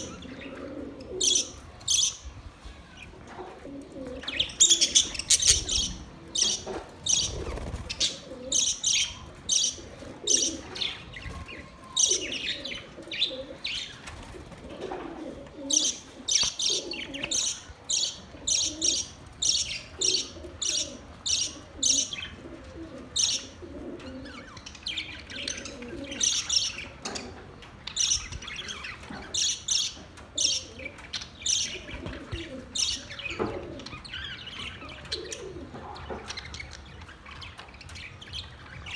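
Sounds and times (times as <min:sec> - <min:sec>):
low warbling chatter: 0:00.0 - 0:38.9.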